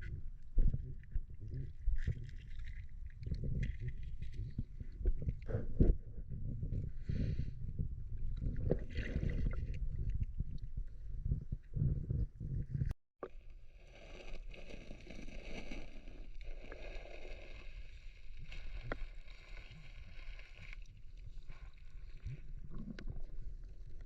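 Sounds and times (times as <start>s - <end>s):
water sloshing and splashing: 0.6s - 5.6s, 8.3s - 11.0s, 13.3s - 24.0s.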